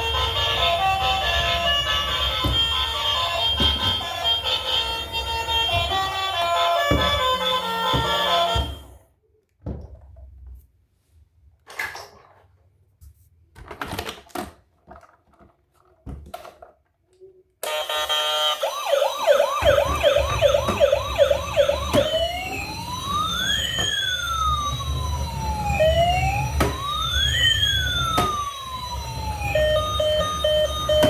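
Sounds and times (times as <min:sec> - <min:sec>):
toy electronic siren: 0:00.0 - 0:08.8, 0:17.6 - 0:31.0.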